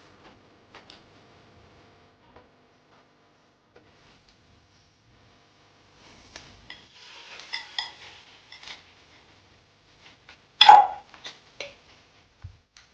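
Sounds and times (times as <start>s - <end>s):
dishes clattering: 6.7s - 8.8s, 10.6s - 11.0s
tableware clinking and scraping: 6.7s - 8.9s, 10.6s - 11.0s
bowl ringing tones: 10.6s - 11.0s.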